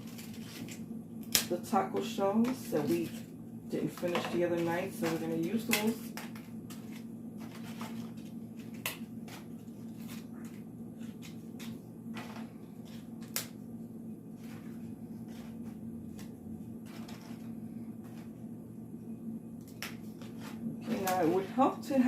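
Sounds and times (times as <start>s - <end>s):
steady low hum: 0.0s - 22.0s
taco shells cracking: 5.6s - 13.6s.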